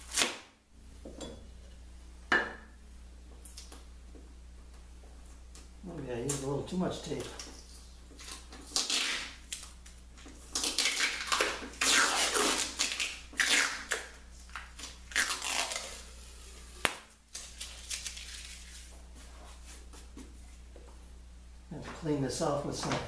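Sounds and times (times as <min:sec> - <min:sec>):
adhesive tape ripping: 0:00.0 - 0:00.5, 0:08.2 - 0:09.8, 0:10.5 - 0:16.1.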